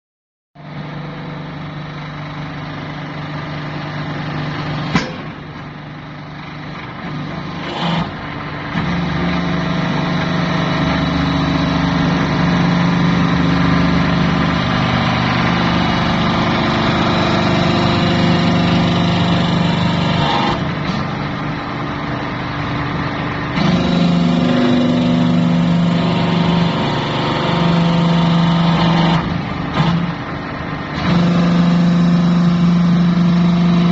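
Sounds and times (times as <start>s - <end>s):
hydraulic pump drone: 0.6s - 33.9s
sharp knock: 4.9s - 5.4s.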